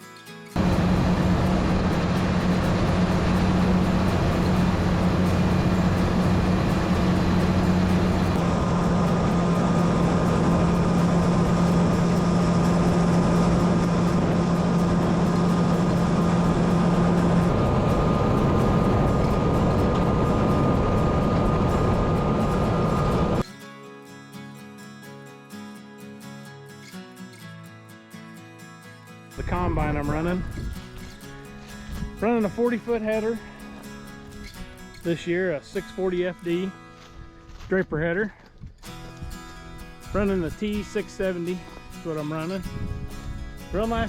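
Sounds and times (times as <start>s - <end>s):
diesel machinery low drone: 0.6s - 23.4s, 39.1s - 44.0s
high machine whine: 0.6s - 23.4s.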